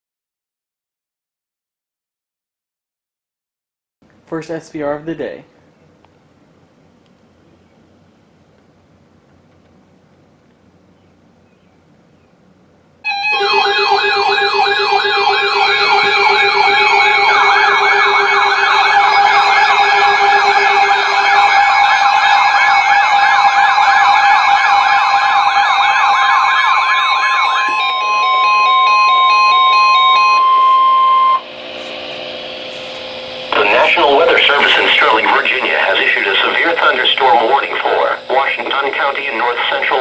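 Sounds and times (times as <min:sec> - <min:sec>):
beeping alarm tones: 0:13.0 - 0:40.0
steady alarm tone: 0:13.0 - 0:40.0
warbling siren tones: 0:13.0 - 0:40.0
weather radio warning tone: 0:13.1 - 0:40.0.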